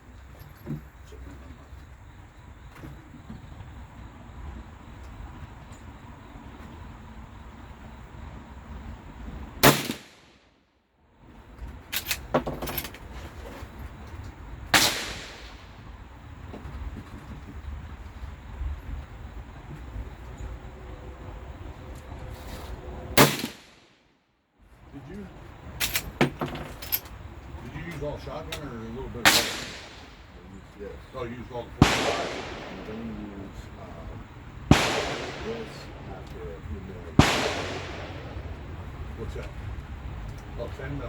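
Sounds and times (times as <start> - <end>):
loud gunshot: 9.6 - 10.4, 14.7 - 15.7, 23.2 - 23.9, 29.2 - 30.3, 31.8 - 33.5, 34.7 - 38.8
steady low rumble: 13.7 - 24.0, 24.6 - 41.0
faint gun cracks: 14.8 - 15.7, 34.7 - 36.4, 37.2 - 38.7.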